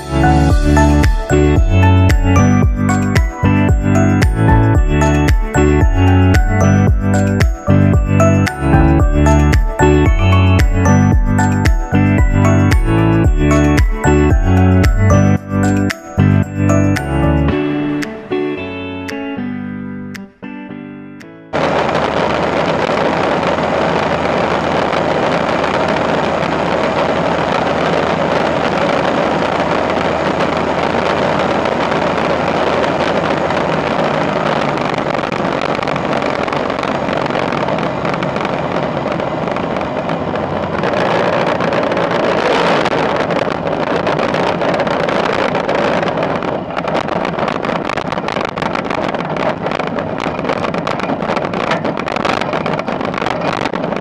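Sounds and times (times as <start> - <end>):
wind rushing over microphone: 0.0 - 18.3, 21.5 - 54.0
aircraft engine and propeller: 21.5 - 48.3.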